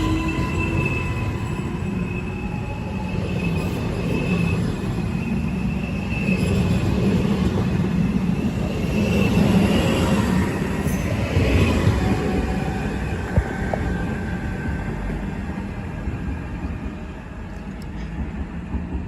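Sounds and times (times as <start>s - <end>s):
faint high wheel squeal: 0.0s - 6.8s
train rumbling on rails: 0.0s - 19.0s.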